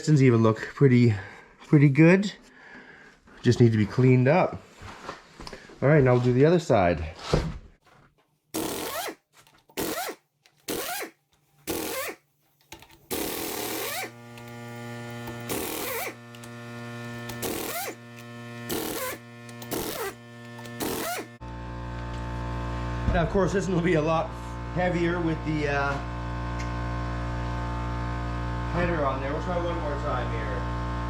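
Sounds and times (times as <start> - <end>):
impact wrench bursts: 8.6 - 21.4
droning machine hum: 13.1 - 31.0.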